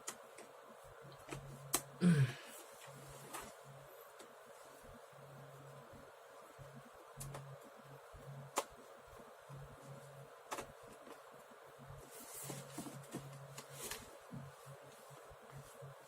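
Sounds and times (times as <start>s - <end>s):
faint low hum: 0.0s - 16.0s
laptop handling clicks and scrapes: 12.0s - 14.2s.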